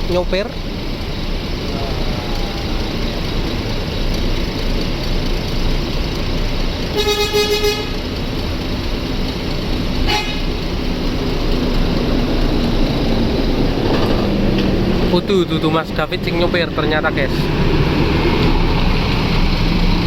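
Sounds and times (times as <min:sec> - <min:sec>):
engine and road noise: 0:00.0 - 0:20.0
bus horn blast: 0:06.9 - 0:08.1, 0:10.0 - 0:10.6.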